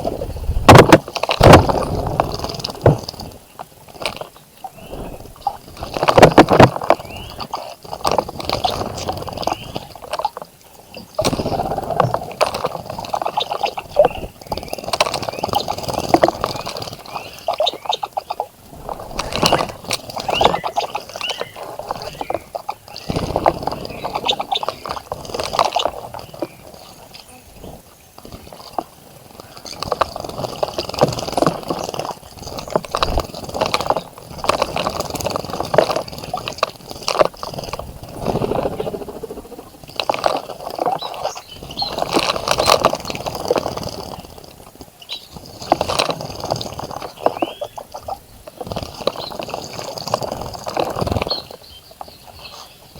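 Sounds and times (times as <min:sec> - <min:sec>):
birds splashing in water: 0:00.0 - 0:52.9.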